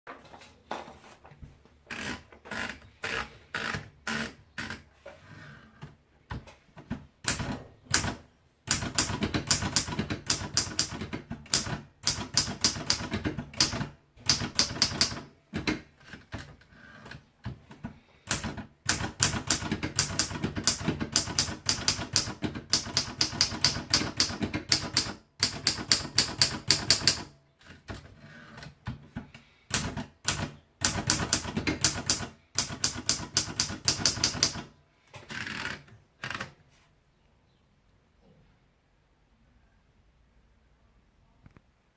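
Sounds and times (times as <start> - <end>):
manual typewriter typing: 7.2 - 28.1, 29.7 - 36.5.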